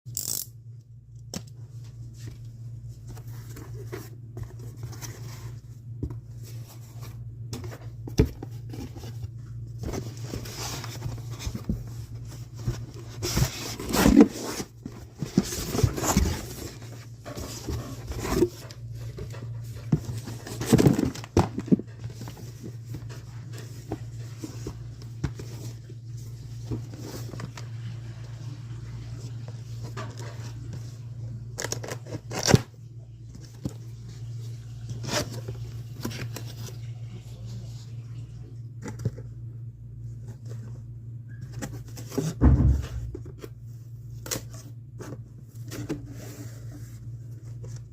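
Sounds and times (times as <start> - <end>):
steady low hum: 0.1 - 47.9.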